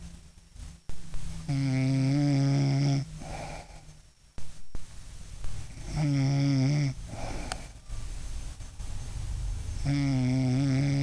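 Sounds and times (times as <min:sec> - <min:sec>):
woman snoring: 0:01.4 - 0:03.9, 0:05.7 - 0:07.8, 0:09.8 - 0:11.0
soft breath out: 0:07.0 - 0:08.1.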